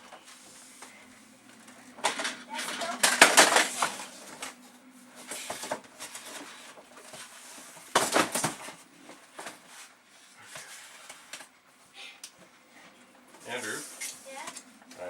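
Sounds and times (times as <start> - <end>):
hard objects knocking and clattering: 2.0 - 4.5.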